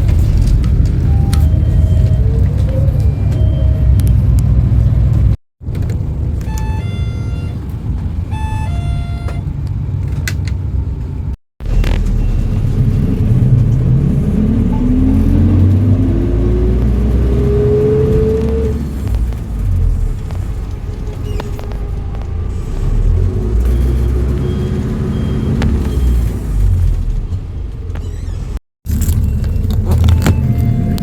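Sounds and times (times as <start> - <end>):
bus accelerating whine: 0.0 - 31.0
bus engine rumble: 0.0 - 31.0.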